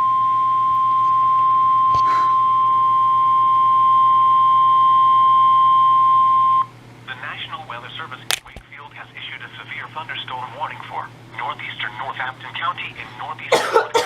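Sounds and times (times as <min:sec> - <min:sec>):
faint hum: 0:00.0 - 0:14.0
static crackle: 0:08.3 - 0:09.1.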